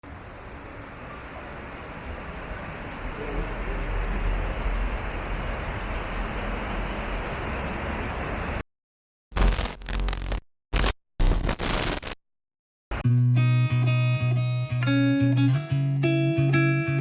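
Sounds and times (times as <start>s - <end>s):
rumble of passing vehicles: 0.0s - 8.6s.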